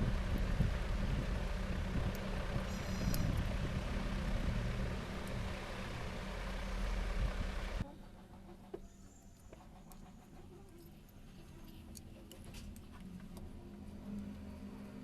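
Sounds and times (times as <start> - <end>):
electric motor humming: 0.0 - 7.8.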